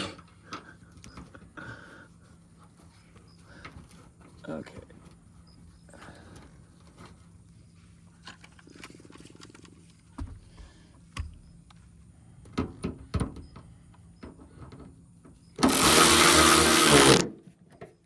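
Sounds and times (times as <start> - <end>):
parts knocking and clicking: 12.4 - 18.0
cordless electric ratchet running: 15.6 - 17.3.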